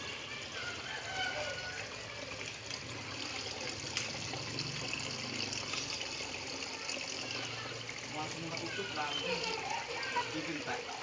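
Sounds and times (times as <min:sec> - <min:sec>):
water trickling: 0:00.0 - 0:11.0
faint voices: 0:06.4 - 0:11.0.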